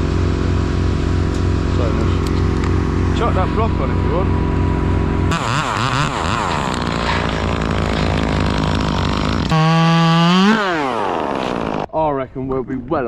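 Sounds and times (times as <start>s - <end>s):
chainsaw engine revving: 5.3s - 11.9s.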